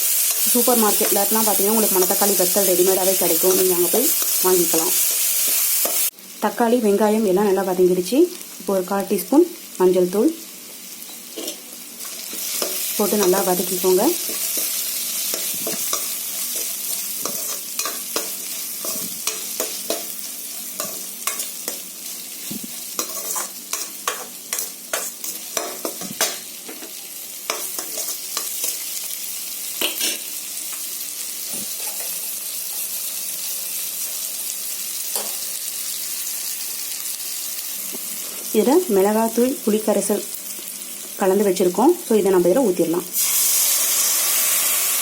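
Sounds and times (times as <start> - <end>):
food sizzling in oil: 0.0 - 45.0.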